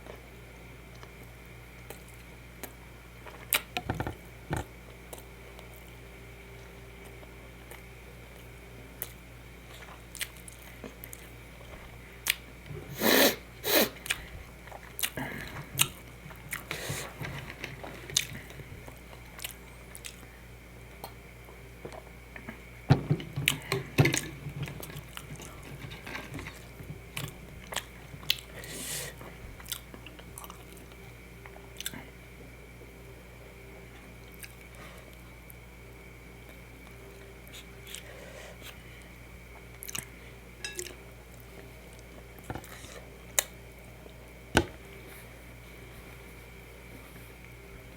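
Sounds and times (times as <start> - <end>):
person chewing food: 9.0 - 11.4, 13.8 - 20.3, 23.4 - 32.0, 39.6 - 43.5.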